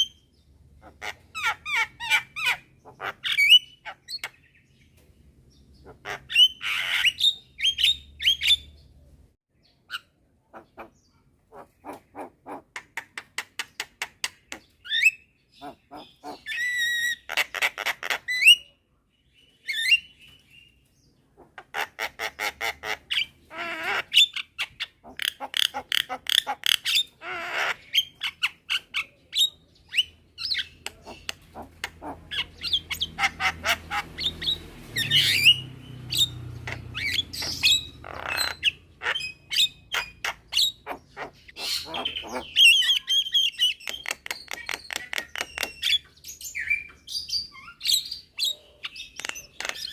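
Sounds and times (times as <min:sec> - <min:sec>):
mynas squawking: 0:30.8 - 0:43.5.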